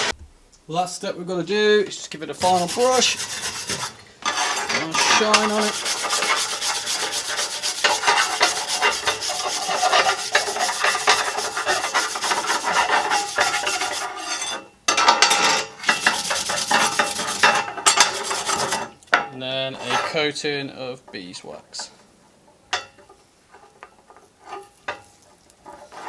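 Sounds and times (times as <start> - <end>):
wire brush scrubbing steel: 2.3 - 14.6, 15.8 - 18.9.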